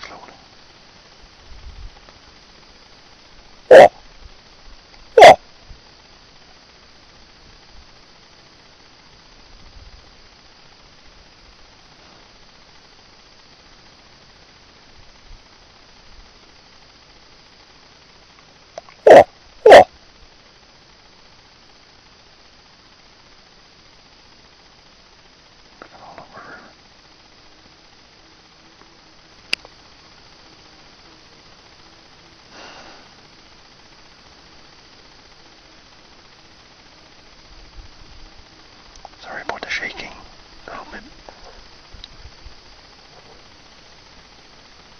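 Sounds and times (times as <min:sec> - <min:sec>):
microphone hiss: 0:00.0 - 0:44.9
soft breathy rustle: 0:11.9 - 0:12.4.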